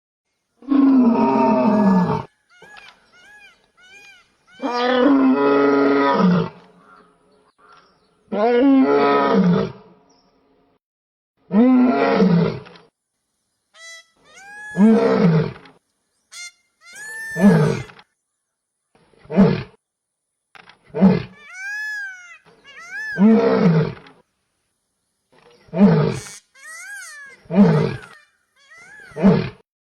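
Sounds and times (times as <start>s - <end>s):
lion roaring: 0.6s - 2.3s, 14.8s - 15.6s, 23.1s - 24.1s, 27.4s - 28.1s
high whistling animal call: 1.6s - 5.2s, 13.8s - 15.4s, 16.3s - 18.0s, 21.3s - 23.7s, 25.8s - 29.5s.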